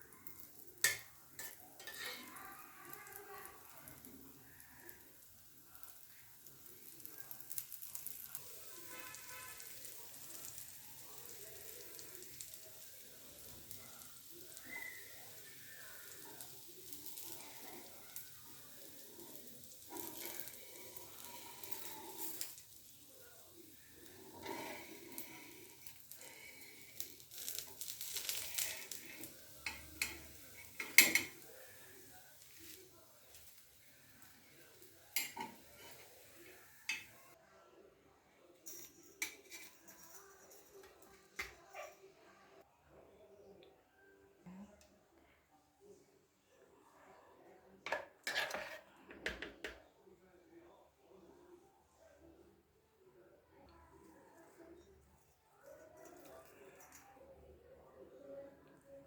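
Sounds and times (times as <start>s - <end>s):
batter sizzling on a griddle: 0.0s - 37.4s, 38.7s - 40.8s
metal utensil scraping griddle: 0.8s - 3.2s, 19.3s - 22.9s, 24.0s - 33.7s, 34.6s - 37.3s, 48.2s - 49.4s.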